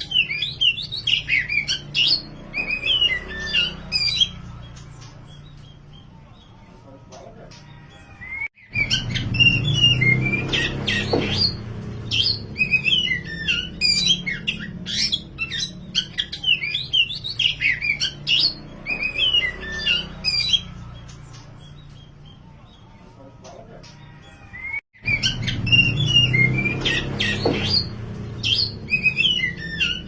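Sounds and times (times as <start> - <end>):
bird whistling and chattering: 0.0 - 4.4, 8.2 - 20.7, 24.6 - 30.0.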